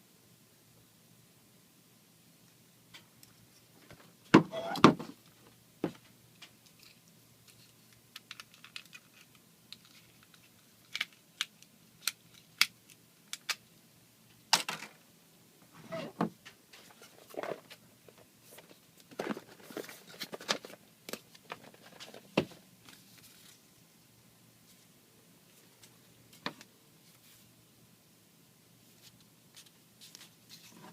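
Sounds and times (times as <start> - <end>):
plastic parts clicking and tapping: 5.8 - 13.6
packaging rustling: 16.8 - 23.6.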